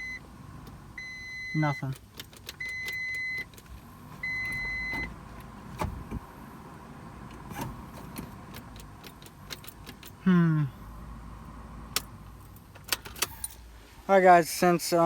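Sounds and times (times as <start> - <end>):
car warning chime beeping: 0.0 - 5.2.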